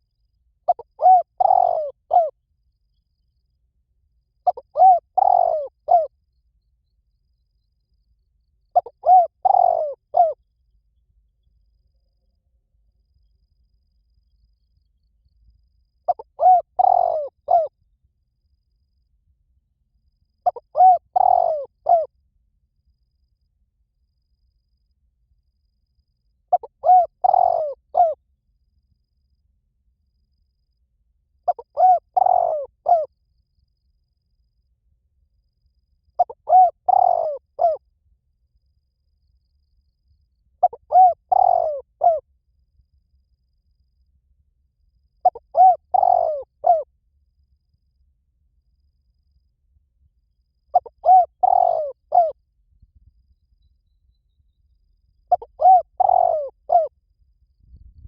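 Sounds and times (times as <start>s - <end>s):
dove cooing: 0.7s - 2.3s, 4.4s - 6.1s, 8.7s - 10.4s, 16.1s - 17.7s, 20.4s - 22.1s, 26.5s - 28.2s, 31.5s - 33.1s, 36.2s - 37.8s, 40.6s - 42.2s, 45.2s - 46.9s, 50.7s - 52.4s, 55.3s - 56.9s.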